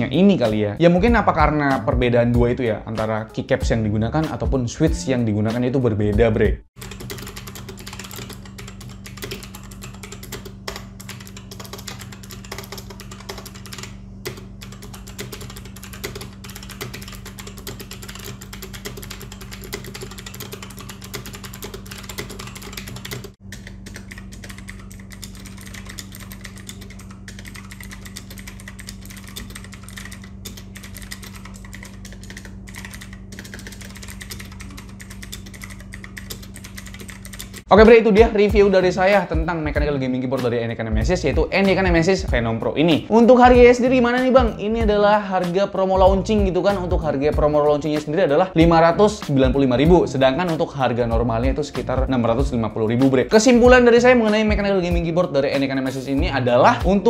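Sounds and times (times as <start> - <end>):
steady low hum: 6.7 - 45.2
clicky mechanical keyboard typing: 6.8 - 37.7.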